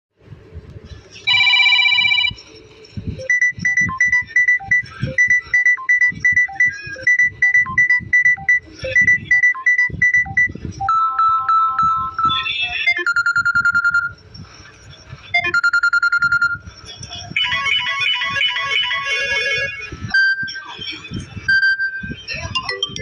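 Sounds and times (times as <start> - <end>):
phone ringtone melody: 1.3 - 2.4, 3.2 - 14.2, 15.4 - 16.6, 17.4 - 20.6.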